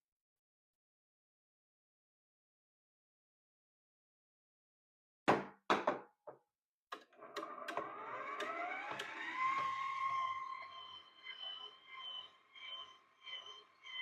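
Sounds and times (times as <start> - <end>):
motor starting clicks: 6.9 - 10.3
mixer motor whine: 6.9 - 14.0.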